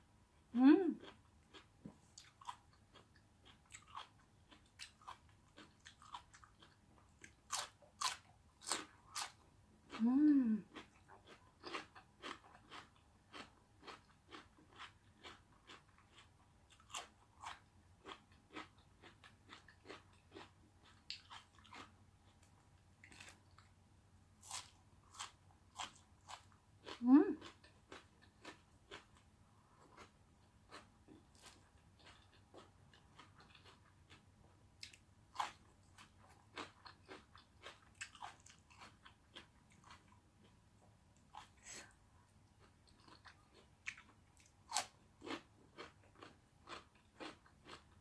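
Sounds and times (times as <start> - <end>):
person humming: 0.5 - 1.0, 10.0 - 10.7, 27.0 - 27.4
chewing and crunching food: 0.5 - 23.8, 24.4 - 48.0.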